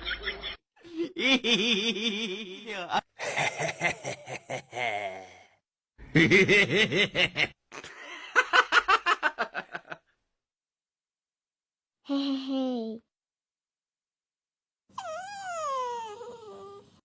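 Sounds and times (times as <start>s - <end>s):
person laughing: 0.2s - 5.5s.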